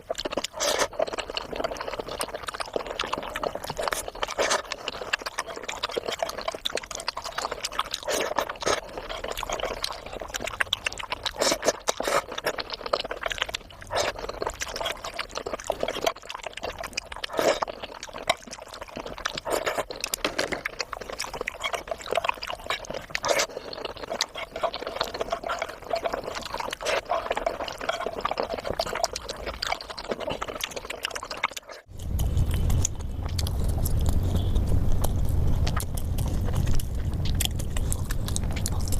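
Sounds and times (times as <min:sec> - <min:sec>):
wet chewing and smacking: 0:00.0 - 0:38.9
steady low hum: 0:31.9 - 0:38.9.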